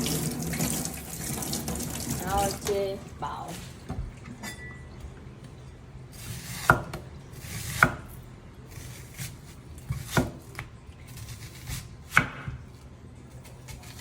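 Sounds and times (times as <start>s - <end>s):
knife chopping onion: 6.2s - 12.8s.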